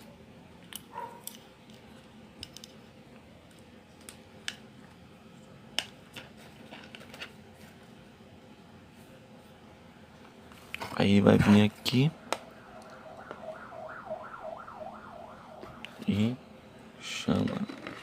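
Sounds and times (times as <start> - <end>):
faint steady hum: 0.0 - 18.0
plastic parts clicking and tapping: 2.4 - 2.8.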